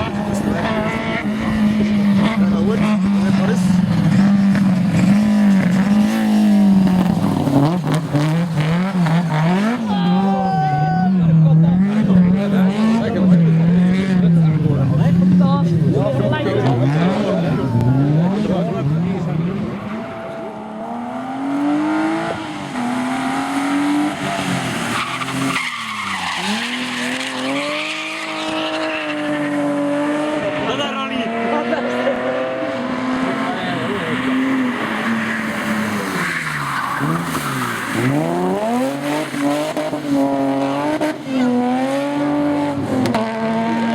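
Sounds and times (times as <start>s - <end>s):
rally car engine revving: 0.0s - 43.9s
tyres skidding: 0.0s - 43.9s
high tyre squeal: 19.8s - 30.7s, 33.3s - 41.6s.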